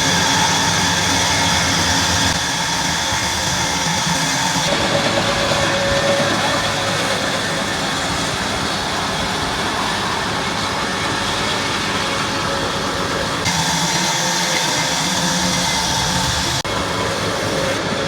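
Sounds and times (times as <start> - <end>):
sawmill machinery running: 0.0 - 18.0.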